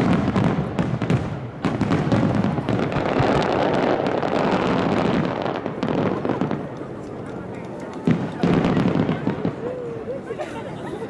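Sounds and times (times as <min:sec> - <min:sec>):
fireworks bursting and crackling: 0:00.0 - 0:10.0.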